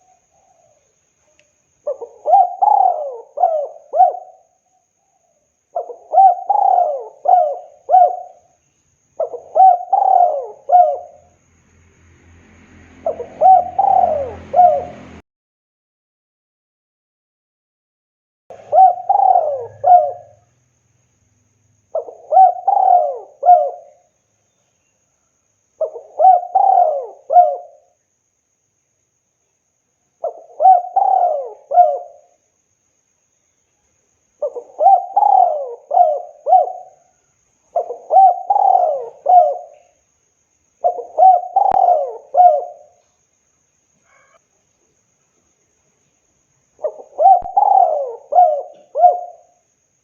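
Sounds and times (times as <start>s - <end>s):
dove cooing: 1.8s - 4.5s, 5.7s - 8.6s, 9.2s - 11.3s, 13.0s - 15.2s, 18.5s - 20.5s, 21.9s - 24.1s, 25.8s - 28.0s, 30.2s - 32.4s, 34.4s - 40.0s, 40.8s - 43.0s, 46.8s - 49.6s.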